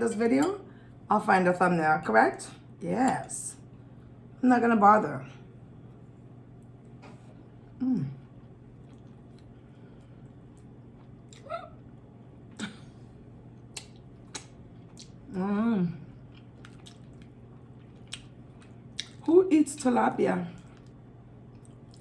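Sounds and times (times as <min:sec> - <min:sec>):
person humming: 0:07.8 - 0:08.2
chewing with mouth clicks: 0:08.2 - 0:11.5, 0:13.6 - 0:15.3, 0:16.2 - 0:19.3, 0:20.6 - 0:22.0.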